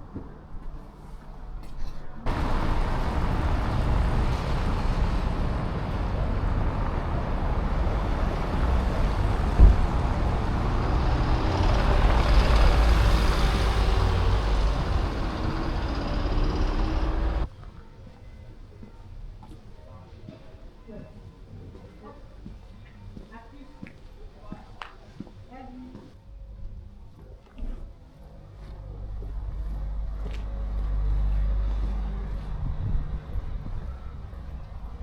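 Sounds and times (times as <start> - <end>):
large road vehicle rumbling: 2.2 - 17.5, 28.8 - 35.0
thump: 9.4 - 10.2.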